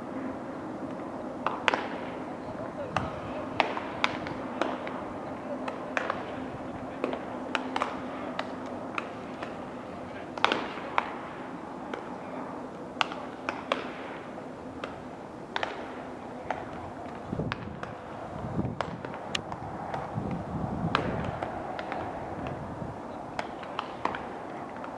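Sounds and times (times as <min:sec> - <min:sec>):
baseballs smacking into gloves: 0:01.4 - 0:02.0, 0:02.8 - 0:05.0, 0:05.6 - 0:06.4, 0:07.0 - 0:09.7, 0:10.3 - 0:11.2, 0:11.9 - 0:12.2, 0:13.0 - 0:14.1, 0:14.8 - 0:18.0, 0:18.8 - 0:22.6, 0:23.3 - 0:24.9.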